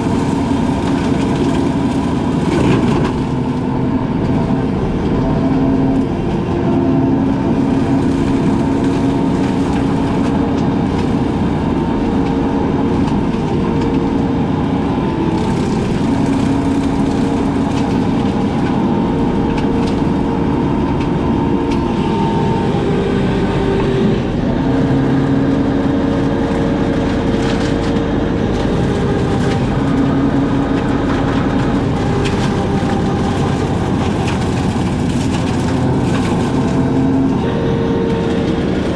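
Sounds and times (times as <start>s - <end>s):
brush cutter engine running: 0.0s - 38.9s.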